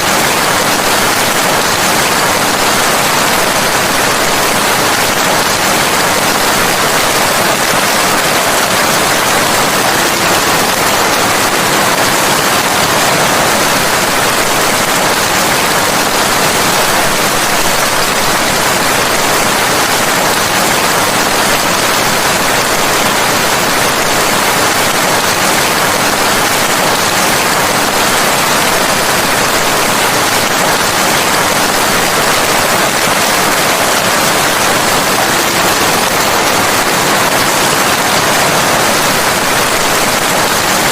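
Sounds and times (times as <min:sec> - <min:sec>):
heavy rain hissing: 0:00.0 - 0:40.9.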